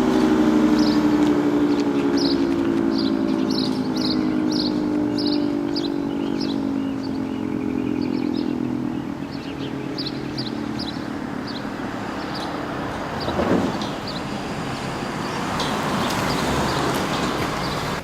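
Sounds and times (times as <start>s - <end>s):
dual-tone siren winding down: 0.0s - 13.2s.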